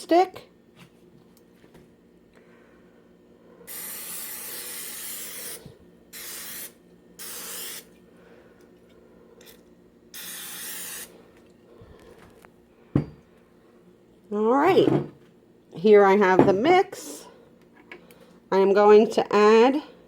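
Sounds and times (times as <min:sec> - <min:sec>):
cooking spray hissing: 0:03.7 - 0:07.9, 0:10.2 - 0:11.1.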